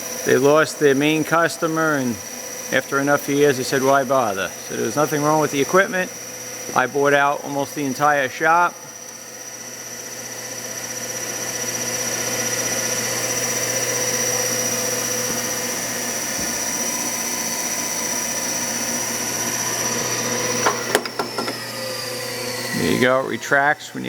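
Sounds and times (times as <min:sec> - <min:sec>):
grinding wheel whining: 0:00.0 - 0:24.0.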